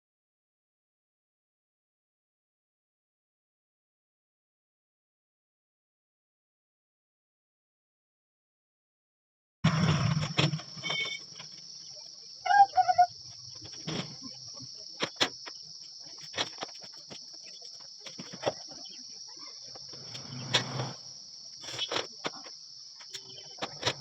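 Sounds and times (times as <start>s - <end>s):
crickets droning: 9.7s - 24.0s.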